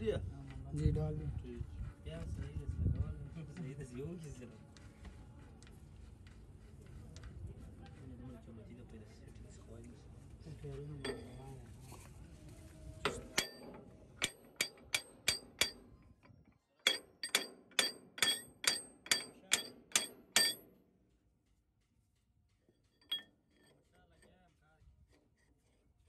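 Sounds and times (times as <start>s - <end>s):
hammer striking metal: 11.0s - 11.6s, 13.1s - 16.2s, 16.8s - 20.8s, 23.0s - 23.9s.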